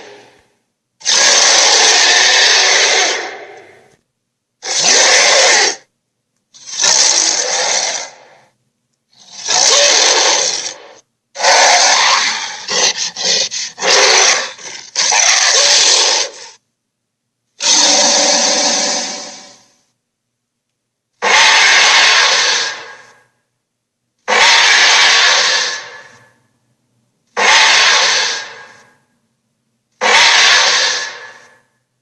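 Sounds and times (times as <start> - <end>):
dinosaur roars: 1.0 - 3.9, 4.6 - 5.8, 6.6 - 8.4, 9.2 - 16.6, 17.6 - 19.7, 21.2 - 23.2, 24.3 - 26.3, 27.4 - 28.9, 30.0 - 31.6.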